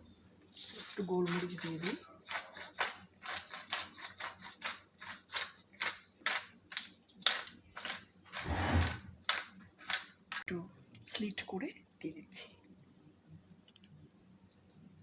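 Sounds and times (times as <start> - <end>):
pepper grinder clicking: 1.3 - 8.4, 9.2 - 10.4.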